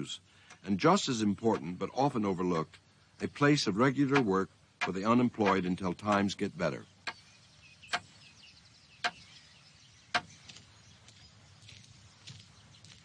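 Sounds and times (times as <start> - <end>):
faint bird chirps: 6.4 - 13.0.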